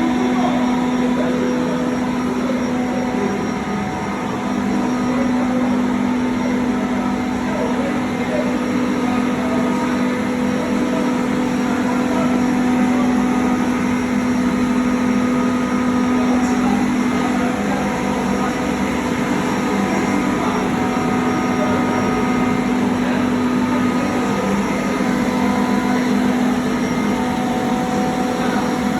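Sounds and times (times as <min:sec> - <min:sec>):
screw compressor running: 0:08.1 - 0:28.9.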